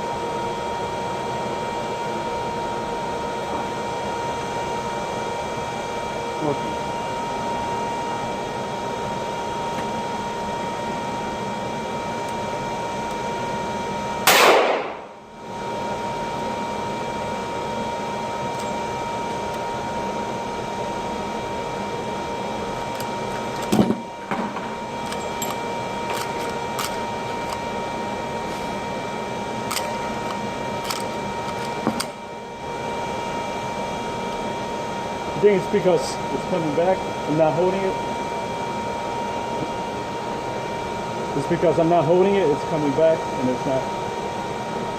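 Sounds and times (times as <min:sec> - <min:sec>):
steady background hum: 0:00.0 - 0:44.9
gunshots: 0:14.3 - 0:15.0.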